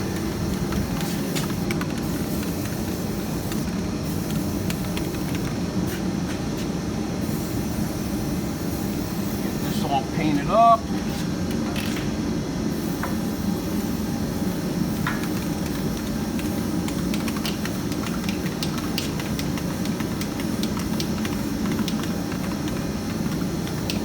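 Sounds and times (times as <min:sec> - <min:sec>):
spray-paint can hissing: 0:00.3 - 0:09.9, 0:12.7 - 0:24.0.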